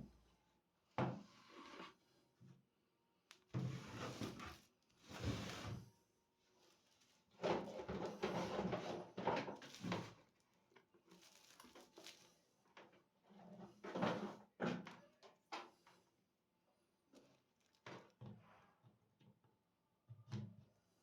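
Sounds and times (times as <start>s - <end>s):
rustling and knocking of objects: 7.3s - 10.2s.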